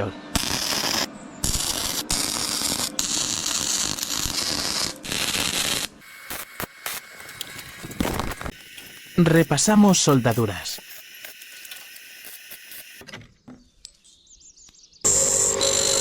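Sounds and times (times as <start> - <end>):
welder crackling: 0.3 - 13.0.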